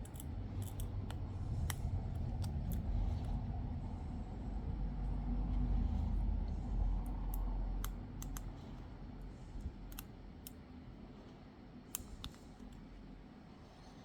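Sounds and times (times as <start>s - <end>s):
low rumble: 0.2s - 8.1s.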